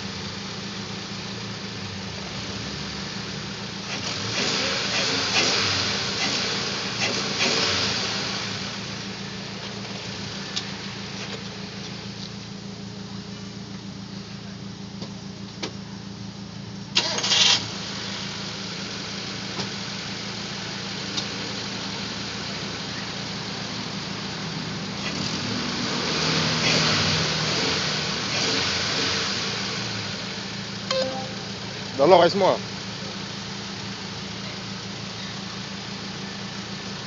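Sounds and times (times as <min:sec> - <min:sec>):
car engine running: 0:00.0 - 0:26.0, 0:27.2 - 0:37.0.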